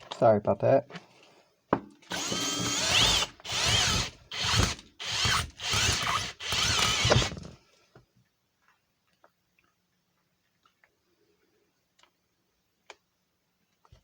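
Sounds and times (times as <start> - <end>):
electric drill boring into metal: 2.1 - 7.4.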